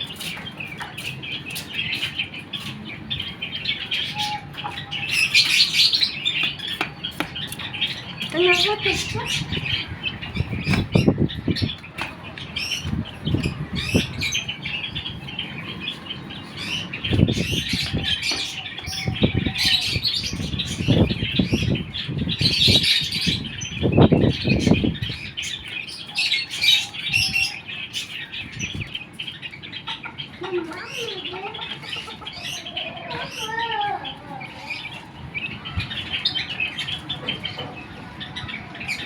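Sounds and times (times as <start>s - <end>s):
wings flapping and scuffling: 0.0s - 3.4s, 4.2s - 14.3s
chickens peeping: 0.0s - 39.0s.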